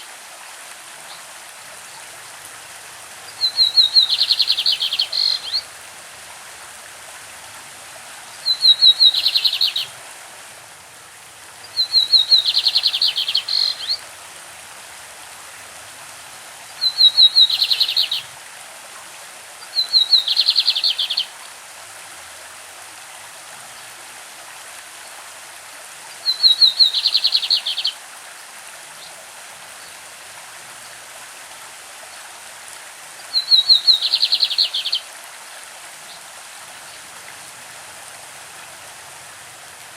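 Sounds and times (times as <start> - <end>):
stream rushing: 0.0 - 39.9
bird singing trilled phrases: 3.4 - 5.6, 8.4 - 9.9, 11.7 - 14.0, 16.8 - 18.3, 19.8 - 21.3, 26.2 - 28.0, 33.4 - 35.0.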